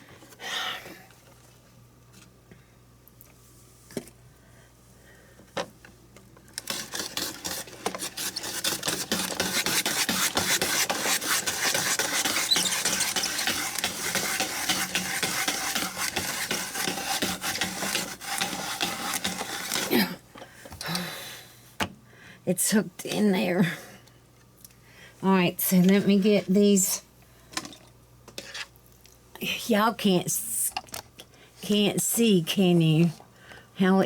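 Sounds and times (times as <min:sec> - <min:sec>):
vegetable slicer slicing: 0:06.6 - 0:20.0.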